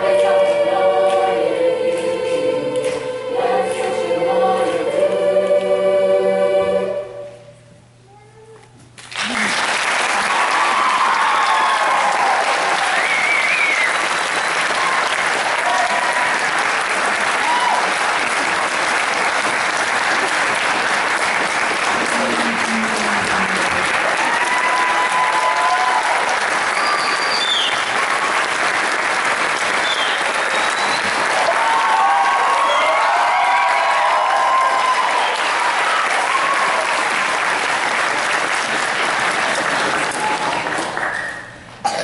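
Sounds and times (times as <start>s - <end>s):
audience applauding: 9.0s - 41.6s
cheers and whoops: 10.2s - 16.5s, 17.2s - 18.0s, 24.0s - 27.8s, 29.8s - 37.1s.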